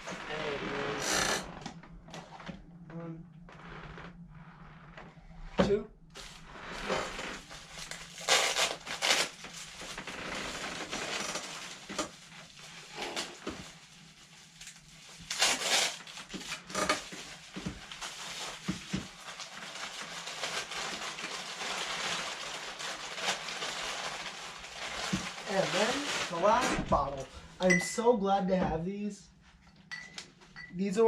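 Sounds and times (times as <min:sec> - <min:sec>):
packaging rustling and crinkling: 0:06.2 - 0:27.3.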